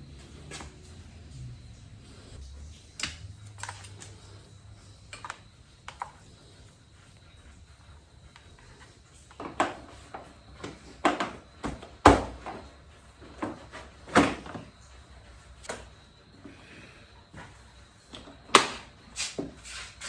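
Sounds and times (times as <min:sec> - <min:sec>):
tools knocking and clunking: 0:09.4 - 0:14.6.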